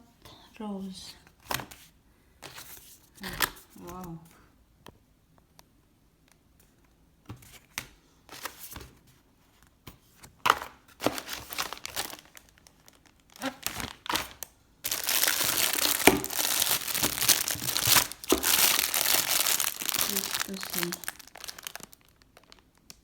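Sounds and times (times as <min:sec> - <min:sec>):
gift wrapping crinkling and tearing: 0:10.6 - 0:23.0.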